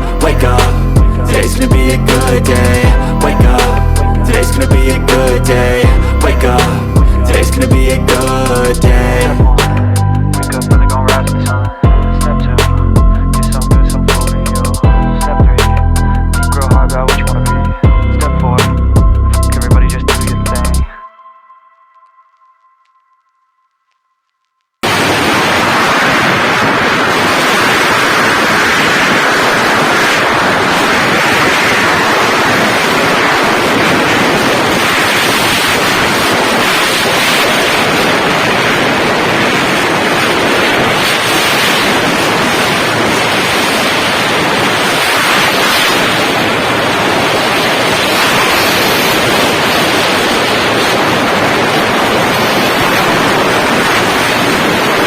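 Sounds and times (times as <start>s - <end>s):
wind rushing over microphone: 0.0s - 20.9s, 24.8s - 55.0s.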